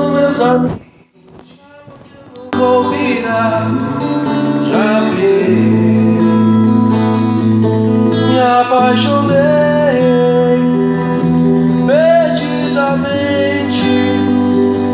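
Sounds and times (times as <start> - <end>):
acoustic guitar strumming: 0.0 - 14.9
wordless vocal line: 0.0 - 14.9.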